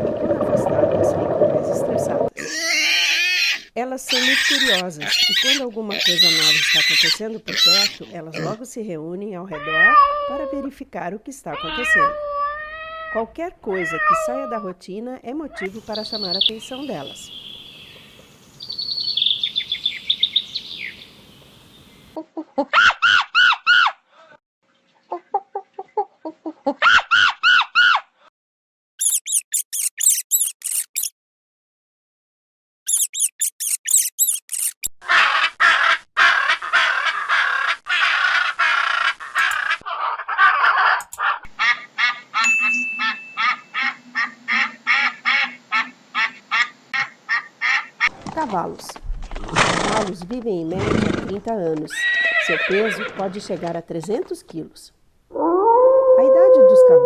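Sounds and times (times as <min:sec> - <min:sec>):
farm fowl calling: 0:35.0 - 0:48.1.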